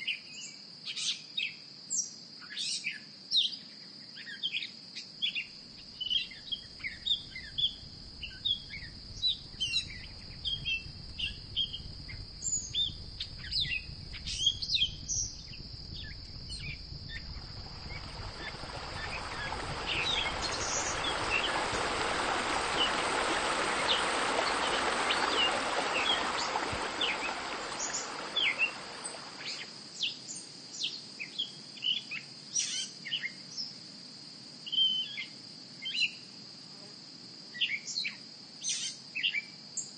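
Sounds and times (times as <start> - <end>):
steady high hiss: 5.6 - 31.0
small birds chirping: 6.0 - 30.2
broad rushing noise: 17.4 - 29.8.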